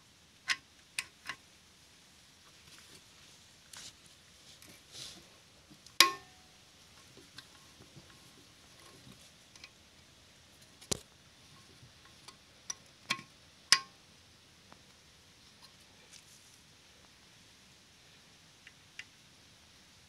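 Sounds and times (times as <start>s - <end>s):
hand tools clinking on metal: 6.0s - 6.4s.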